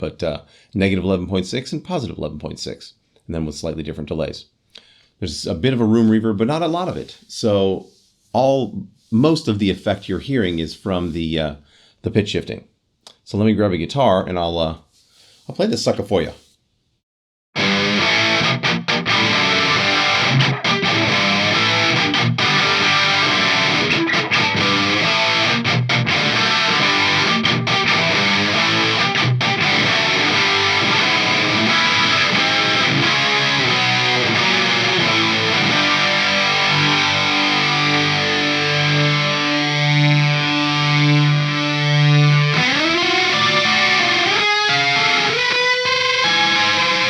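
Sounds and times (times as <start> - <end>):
distorted electric guitar: 17.6 - 47.0.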